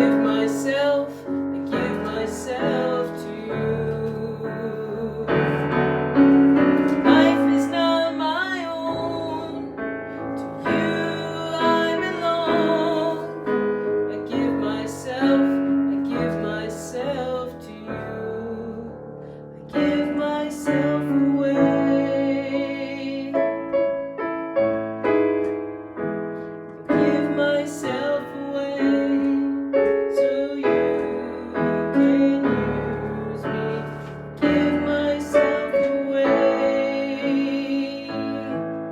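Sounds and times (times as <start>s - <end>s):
piano chords ringing: 0.0s - 38.9s.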